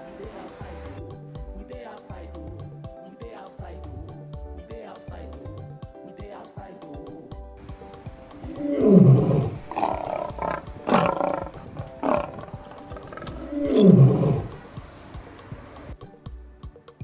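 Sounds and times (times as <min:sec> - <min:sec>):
background music: 0:00.0 - 0:17.0
big cat growling: 0:08.4 - 0:14.7
big cat roaring: 0:08.4 - 0:14.7.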